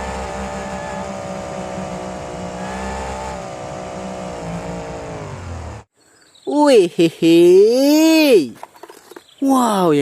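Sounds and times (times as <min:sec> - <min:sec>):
engine running at high idle: 0:00.0 - 0:05.9.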